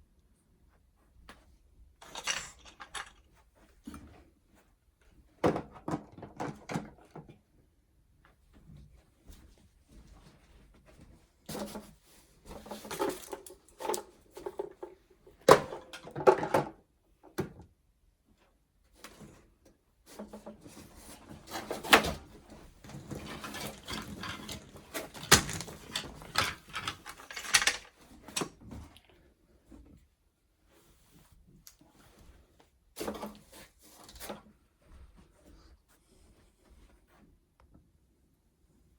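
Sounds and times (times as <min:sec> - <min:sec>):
packaging rustling: 0:22.8 - 0:28.0.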